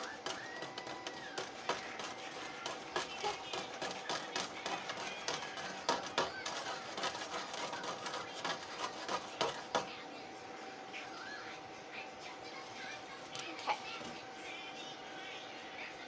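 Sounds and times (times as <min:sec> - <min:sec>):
kitchen utensils clicking and knocking: 0:00.0 - 0:09.9.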